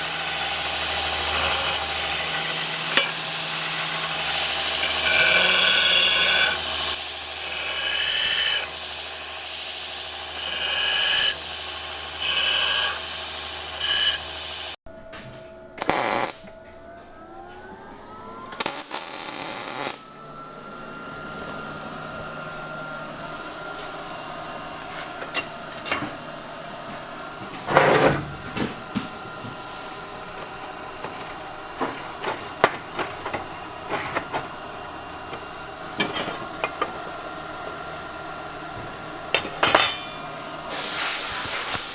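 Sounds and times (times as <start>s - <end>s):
machine cutting steel: 0.0s - 14.8s, 21.0s - 41.9s
motor whine: 13.7s - 41.9s.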